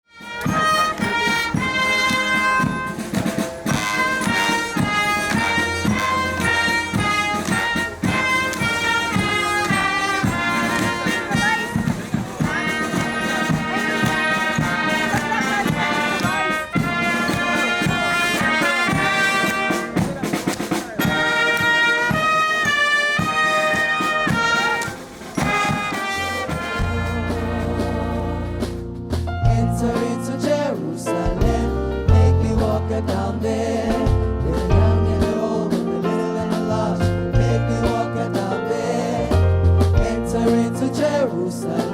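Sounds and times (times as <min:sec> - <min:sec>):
upbeat brass music: 0:00.0 - 0:30.8.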